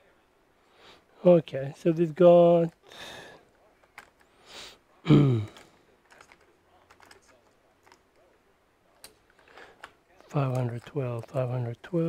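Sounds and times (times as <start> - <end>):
short breath: 2.9 - 3.4
small parts clicking and tapping: 3.5 - 4.3, 5.5 - 8.4, 9.0 - 12.0.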